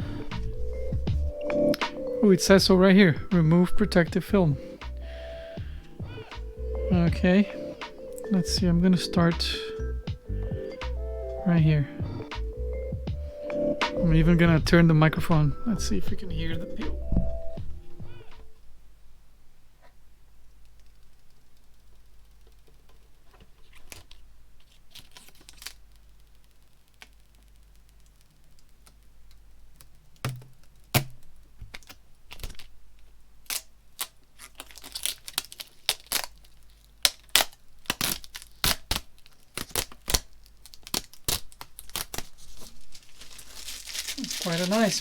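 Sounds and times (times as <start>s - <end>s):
plastic film peeling and crackling: 0.0s - 2.3s, 20.6s - 45.0s.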